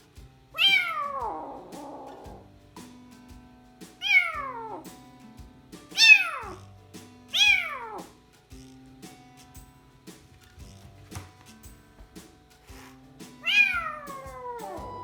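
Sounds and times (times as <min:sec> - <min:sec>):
soft background music: 0:00.0 - 0:15.0
kitten meowing: 0:00.6 - 0:02.4, 0:04.0 - 0:04.8, 0:06.0 - 0:06.6, 0:07.4 - 0:08.0, 0:13.4 - 0:15.0.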